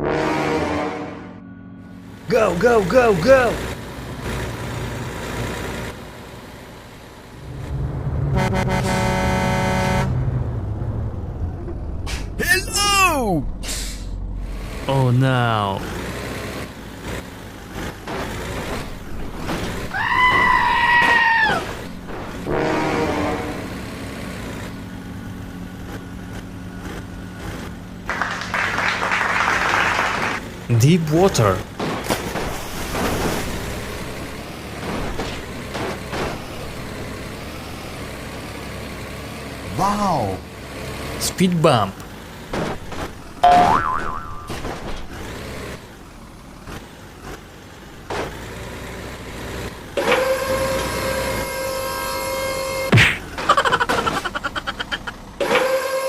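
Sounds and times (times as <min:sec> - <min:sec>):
loud horn blast: 0:00.0 - 0:02.0, 0:08.2 - 0:10.2, 0:22.4 - 0:23.9, 0:50.0 - 0:53.0, 0:55.4 - 0:56.0
truck engine idling: 0:01.4 - 0:56.0.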